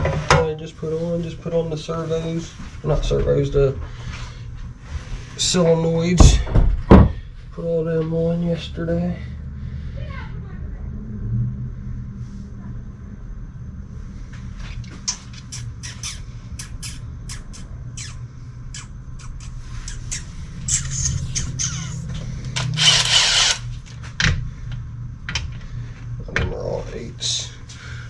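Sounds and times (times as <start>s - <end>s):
steady low hum: 0.0s - 28.0s
harsh rasping burst: 22.6s - 23.6s.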